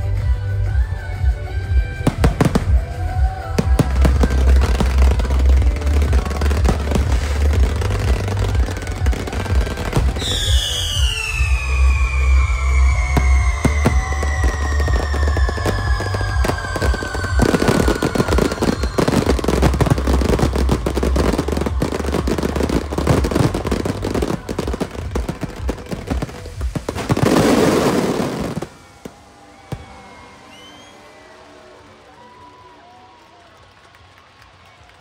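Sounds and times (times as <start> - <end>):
music with pulsing bass: 0.0 - 28.0
fireworks crackling and banging: 1.9 - 35.0.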